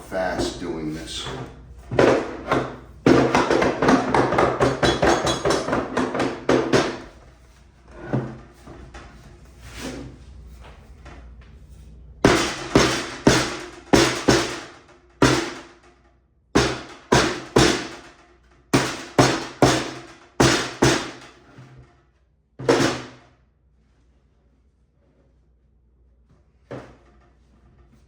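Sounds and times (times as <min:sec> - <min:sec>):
hammer striking wooden box: 0:02.0 - 0:07.1, 0:12.2 - 0:15.7, 0:16.6 - 0:18.0, 0:18.7 - 0:21.2.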